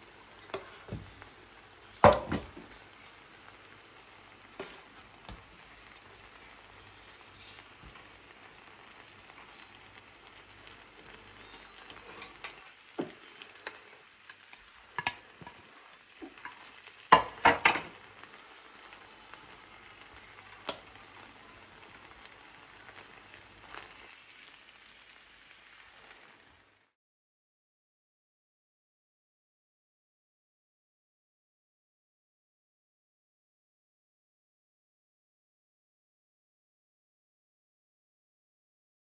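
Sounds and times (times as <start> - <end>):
food sizzling in a pot: 0.0 - 27.0
utensil knocking against pot: 2.0 - 2.5.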